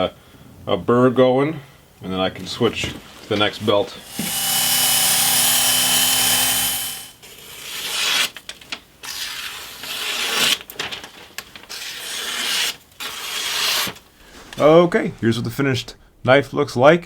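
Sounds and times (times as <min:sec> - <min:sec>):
belt grinder running: 0:04.0 - 0:07.2.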